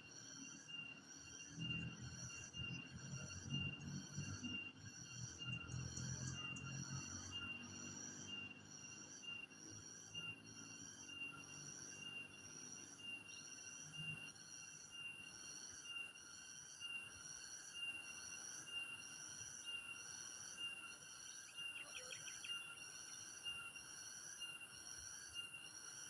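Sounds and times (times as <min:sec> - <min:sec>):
high-pitched insect hum: 0:00.0 - 0:26.0
pulsing insect call: 0:00.0 - 0:26.0.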